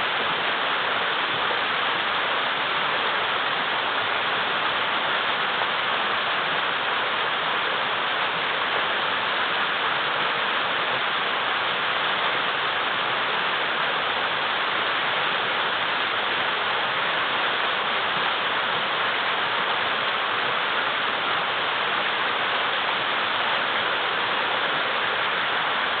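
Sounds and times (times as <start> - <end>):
river rushing over boulders: 0.0 - 26.0.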